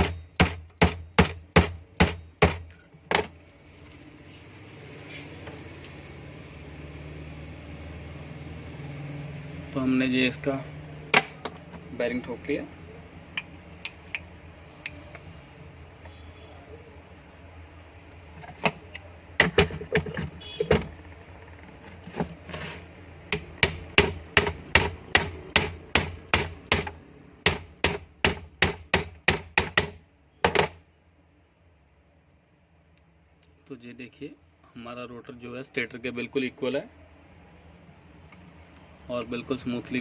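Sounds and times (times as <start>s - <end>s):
hammer tapping on metal: 0.0s - 2.8s, 23.3s - 30.7s.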